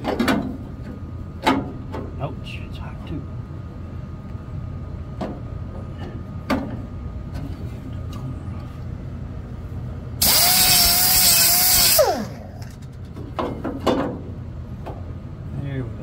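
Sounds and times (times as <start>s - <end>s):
grinder grinding steel: 10.2s - 12.4s.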